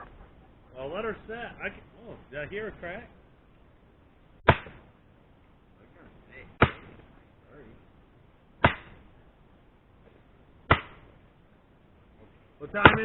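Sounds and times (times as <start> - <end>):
sledgehammer striking a wedge: 4.4 - 4.9, 6.6 - 7.0, 8.6 - 9.1, 10.7 - 11.1, 12.8 - 13.0.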